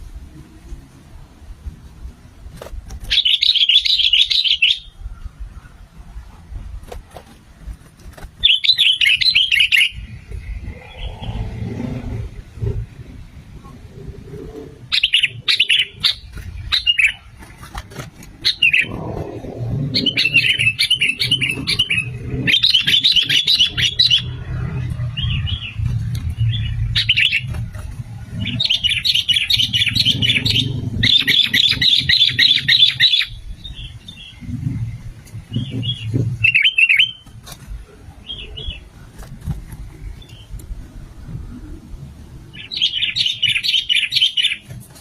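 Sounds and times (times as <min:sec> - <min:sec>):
bulbul chattering calls: 0:03.1 - 0:04.9, 0:08.4 - 0:10.1, 0:14.9 - 0:17.3, 0:18.4 - 0:19.0, 0:20.0 - 0:24.4, 0:26.4 - 0:27.5, 0:28.4 - 0:34.4
steady low rumble: 0:03.8 - 0:43.9.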